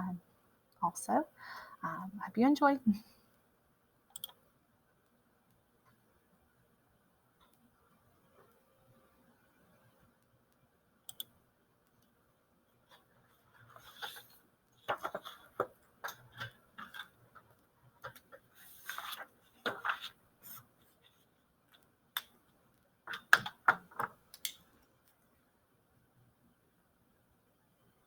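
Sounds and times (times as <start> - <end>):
clicks taps and knocks: 23.1 - 24.6.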